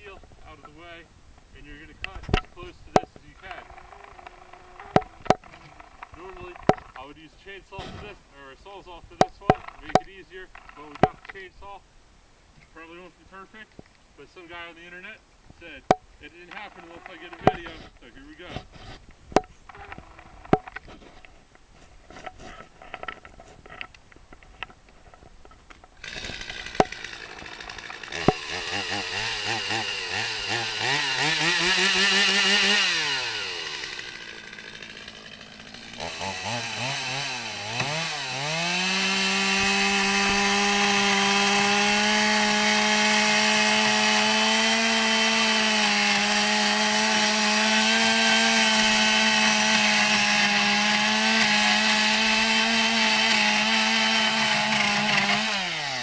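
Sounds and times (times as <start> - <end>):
chainsaw cutting metal: 1.8 - 8.2, 15.6 - 21.1, 25.9 - 56.0
chainsaw revving: 3.4 - 7.2, 26.0 - 56.0.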